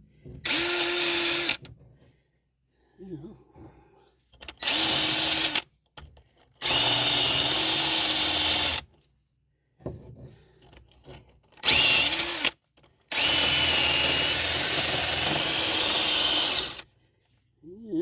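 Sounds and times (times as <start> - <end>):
power drill whine: 0.4 - 1.7, 4.6 - 5.6, 6.6 - 8.8, 11.6 - 16.8.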